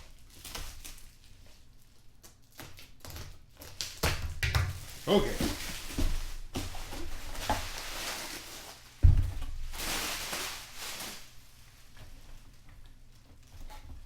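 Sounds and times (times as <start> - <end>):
packaging rustling: 4.8 - 12.3.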